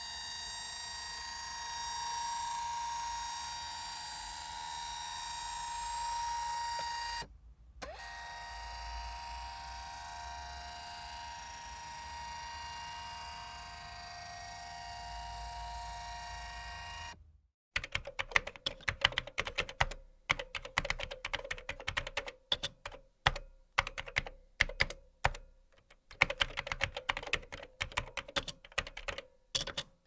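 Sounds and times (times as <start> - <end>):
computer humming with electronic whine: 0.0 - 7.3, 7.9 - 17.2.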